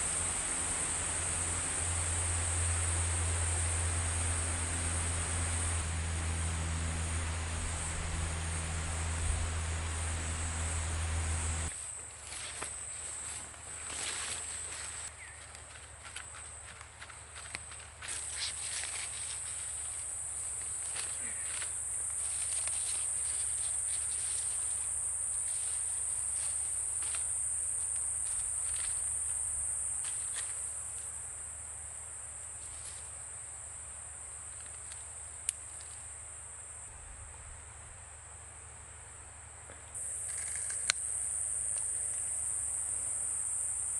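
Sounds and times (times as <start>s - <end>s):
high-pitched insect chorus: 0.0s - 15.5s, 17.4s - 37.8s, 40.0s - 43.9s
faint rustles and clicks: 11.8s - 29.4s.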